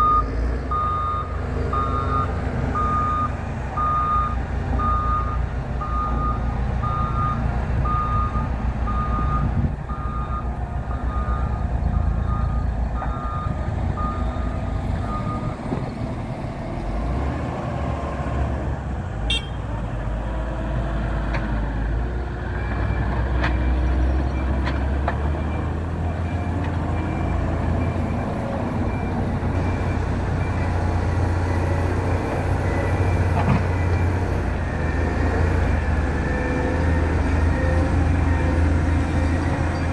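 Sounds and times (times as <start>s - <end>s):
reversing alarm beeping: 0.0s - 11.6s, 12.2s - 15.6s
diesel engines under load: 0.0s - 39.9s.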